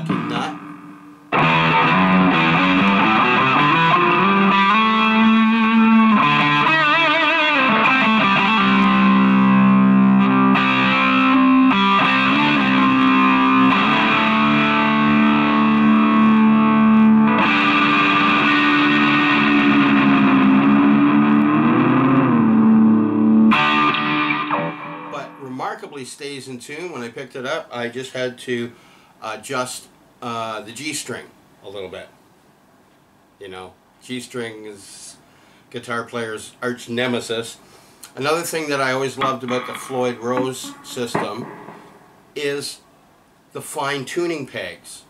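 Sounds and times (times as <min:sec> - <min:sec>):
distorted electric guitar: 0:00.0 - 0:25.6, 0:39.1 - 0:42.4.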